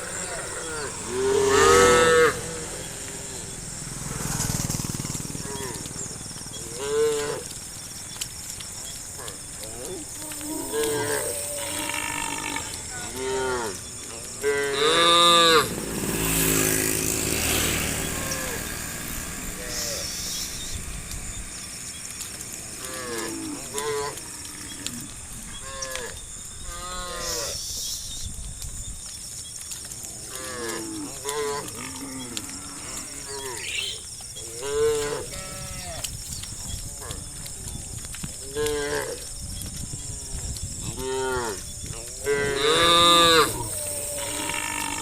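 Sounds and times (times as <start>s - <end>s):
cattle mooing: 0.0s - 3.4s, 9.2s - 13.8s, 14.4s - 15.7s, 30.3s - 36.3s, 42.2s - 45.0s.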